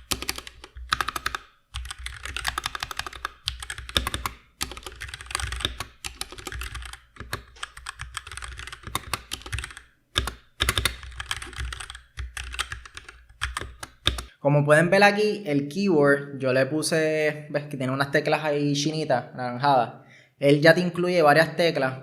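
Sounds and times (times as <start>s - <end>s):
mechanical keyboard key clacks: 0.0s - 14.3s.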